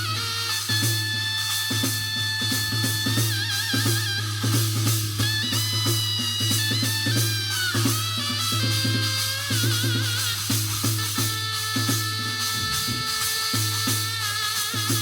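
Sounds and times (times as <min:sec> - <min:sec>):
quick drum strokes: 0:10.5 - 0:15.0.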